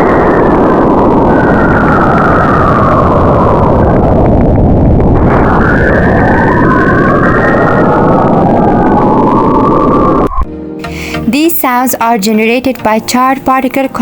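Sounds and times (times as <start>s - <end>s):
dense rushing noise: 0.0s - 10.5s
gliding whistling tones: 5.2s - 10.5s.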